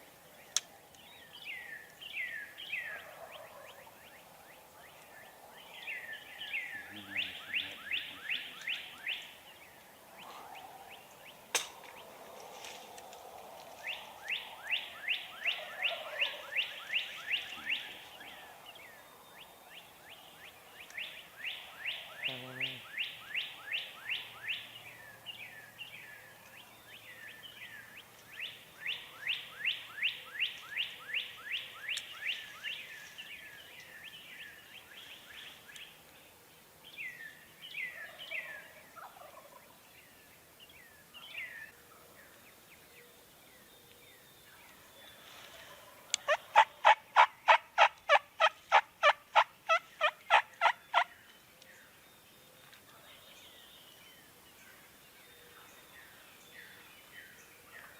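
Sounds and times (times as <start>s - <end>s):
distant turkeys gobbling: 45.5s - 51.1s.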